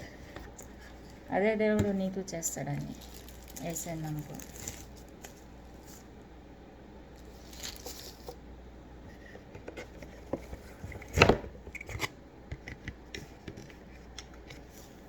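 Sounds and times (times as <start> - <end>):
packaging clicks and rustles: 2.7 - 6.0, 7.2 - 8.4.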